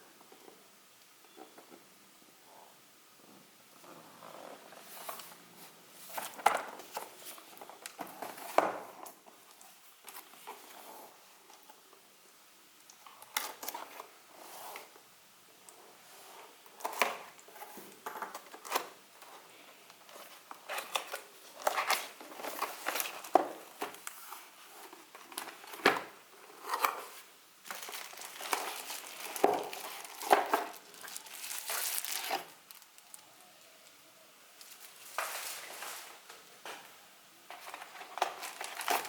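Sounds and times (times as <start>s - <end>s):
packaging crinkling and rustling: 20.0s - 33.4s, 34.6s - 36.9s, 37.5s - 39.0s.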